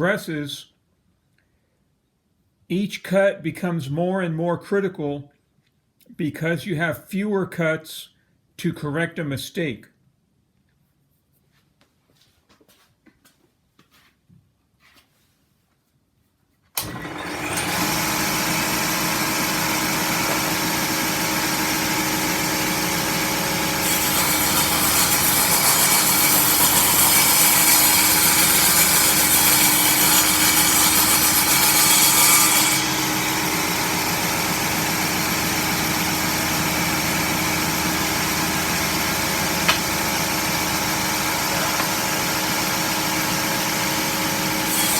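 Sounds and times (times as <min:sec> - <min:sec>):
saw blade cutting wood: 0:16.8 - 0:44.9
table saw running: 0:16.8 - 0:44.9.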